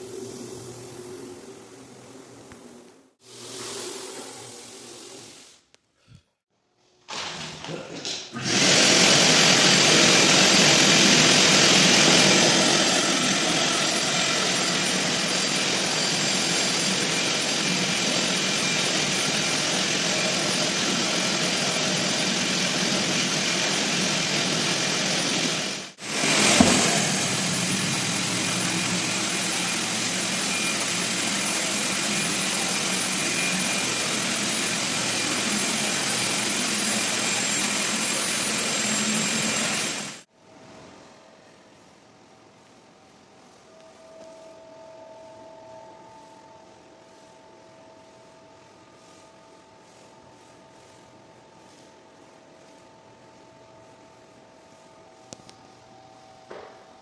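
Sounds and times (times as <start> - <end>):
floor sander roaring: 8.4 - 40.3, 46.1 - 55.9.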